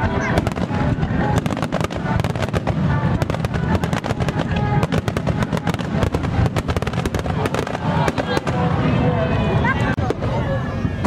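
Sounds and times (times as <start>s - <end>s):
fireworks crackling: 0.0s - 10.9s
music playing: 0.0s - 11.0s.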